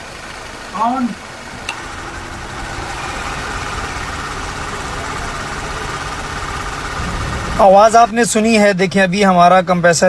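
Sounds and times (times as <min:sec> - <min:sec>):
compressor humming: 0:00.0 - 0:08.6
car engine idling: 0:00.0 - 0:10.0
compressor click: 0:01.6 - 0:02.0.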